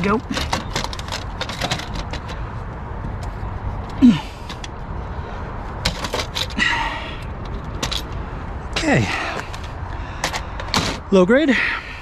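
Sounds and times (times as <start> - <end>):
clicks and knocks of printer parts: 0.3 - 2.4, 5.8 - 6.6
person grunting: 4.0 - 4.4.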